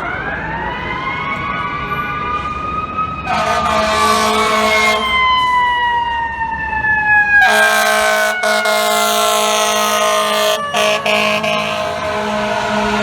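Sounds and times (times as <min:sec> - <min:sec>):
siren wailing: 0:00.0 - 0:13.0
fire truck air horn blasts: 0:03.2 - 0:05.7, 0:07.4 - 0:13.0.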